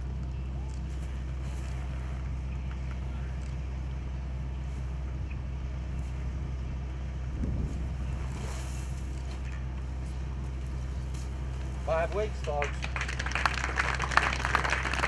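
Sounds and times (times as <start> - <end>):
low hum: 0.0 - 15.0
wind buffeting microphone: 6.2 - 8.4.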